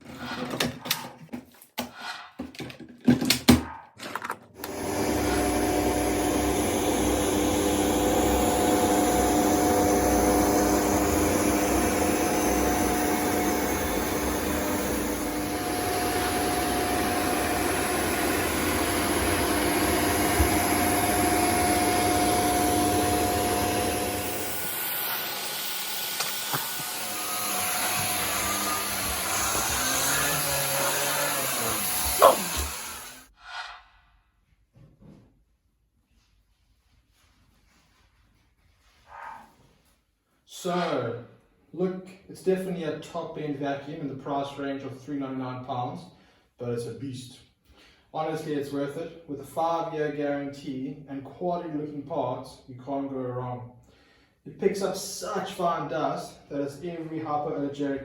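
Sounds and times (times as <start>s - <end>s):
vacuum cleaner whining hum: 4.6s - 33.3s.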